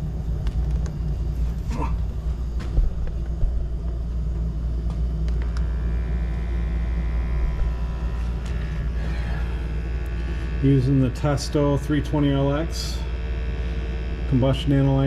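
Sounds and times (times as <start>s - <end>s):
furnace burner rumble: 0.0s - 15.0s
high multi-tone whine: 0.0s - 15.0s.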